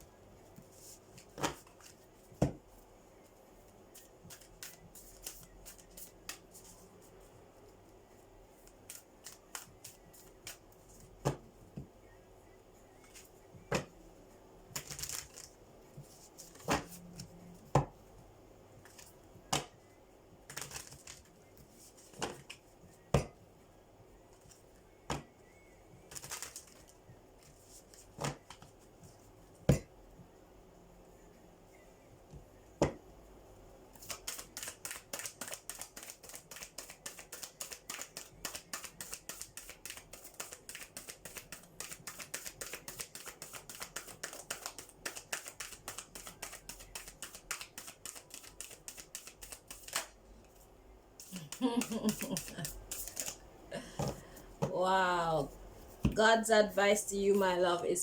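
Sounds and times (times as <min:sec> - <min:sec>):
cards being shuffled: 0:14.8 - 0:15.5, 0:20.5 - 0:22.6, 0:26.1 - 0:28.7, 0:34.0 - 0:50.6, 0:51.2 - 0:53.4.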